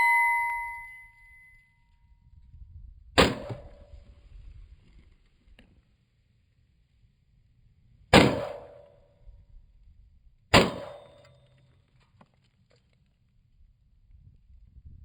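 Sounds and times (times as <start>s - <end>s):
rifle shots with ringing echo: 3.2s - 3.9s, 8.1s - 9.0s, 10.5s - 11.4s.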